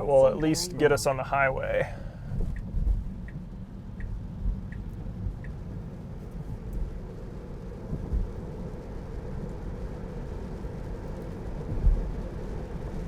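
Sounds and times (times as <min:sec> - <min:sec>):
tyres rumbling on wet road: 0:00.0 - 0:13.0
turn signal ticking: 0:02.3 - 0:06.9.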